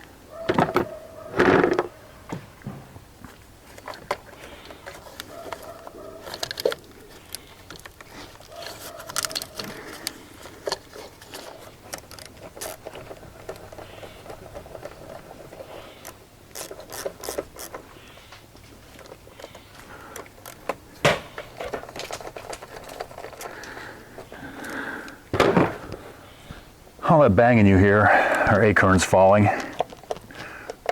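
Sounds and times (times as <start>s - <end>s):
ratchet clicks: 16.0s - 17.8s
acorns banging on vehicle: 21.0s - 23.8s, 25.3s - 26.2s.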